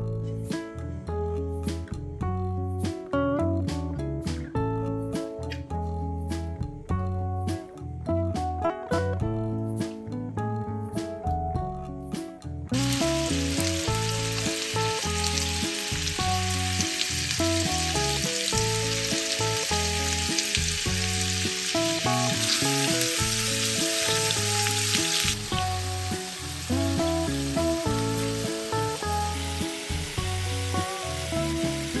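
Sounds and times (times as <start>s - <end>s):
instrumental music: 0.0s - 32.0s
crackling sizzle: 12.8s - 32.0s.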